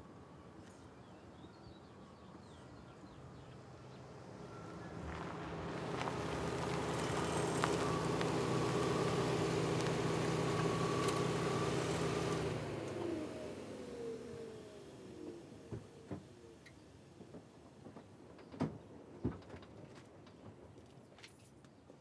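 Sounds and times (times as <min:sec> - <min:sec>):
vehicle engine passing: 0:03.9 - 0:13.9.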